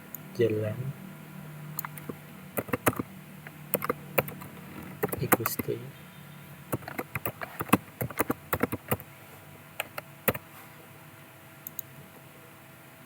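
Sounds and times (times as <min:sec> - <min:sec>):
computer keyboard typing: 0:01.8 - 0:05.8, 0:06.7 - 0:09.1, 0:09.8 - 0:10.4.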